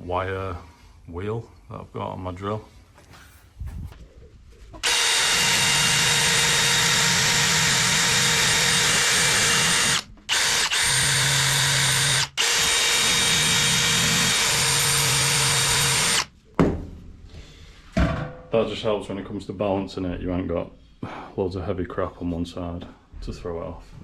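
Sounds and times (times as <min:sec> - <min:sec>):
drill wire brush scrubbing steel: 0:04.8 - 0:16.3.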